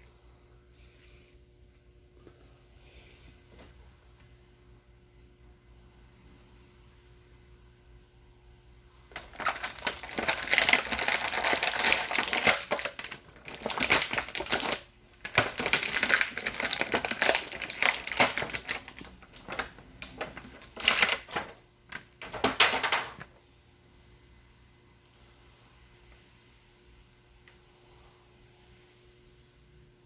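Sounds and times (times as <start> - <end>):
plastic packaging crinkling: 9.1 - 23.3.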